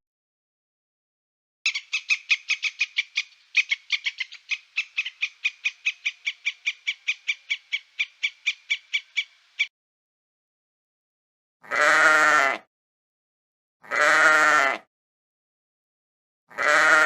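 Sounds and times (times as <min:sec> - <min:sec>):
frog calling: 0:01.7 - 0:09.7.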